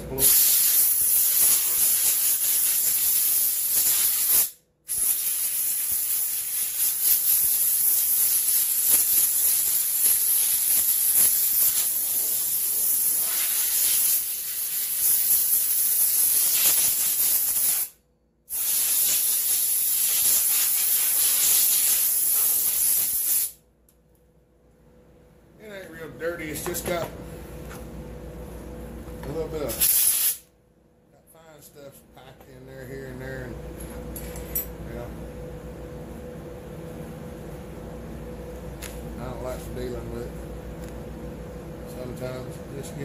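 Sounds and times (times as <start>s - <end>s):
compressed air blow gun hissing: 0.2s - 17.9s.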